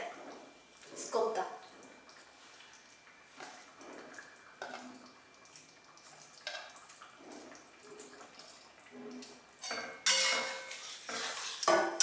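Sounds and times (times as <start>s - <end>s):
metal cookware clatter: 9.6s - 12.0s
utensils scraping a cooking pot: 9.6s - 12.0s.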